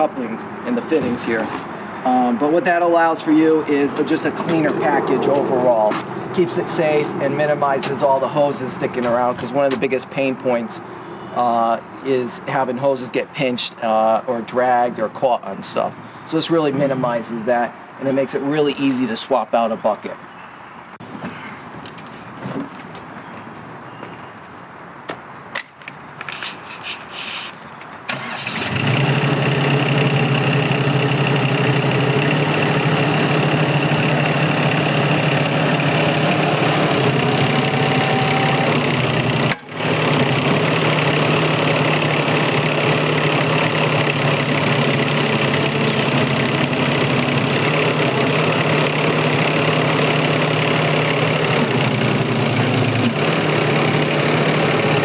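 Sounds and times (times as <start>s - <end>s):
diesel engine running: 28.1s - 55.0s.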